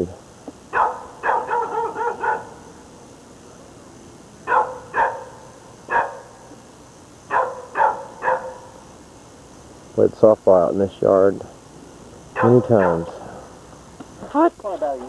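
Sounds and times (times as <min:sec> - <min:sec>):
dog barking: 0:00.7 - 0:02.6, 0:04.4 - 0:06.4, 0:07.3 - 0:08.8, 0:12.3 - 0:13.2.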